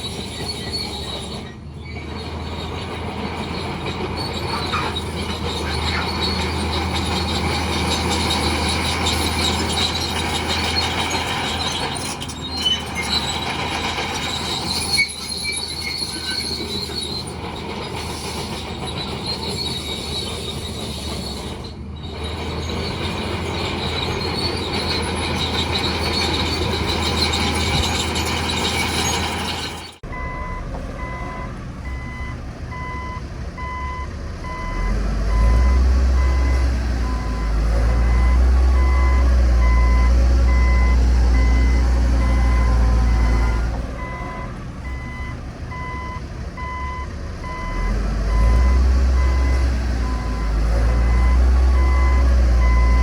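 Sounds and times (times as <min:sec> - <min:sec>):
bulldozer running: 0:00.0 - 0:53.0
diesel truck engine: 0:00.0 - 0:53.0
steel tracks squealing and grinding: 0:00.0 - 0:53.0
reversing alarm beeping: 0:30.1 - 0:53.0.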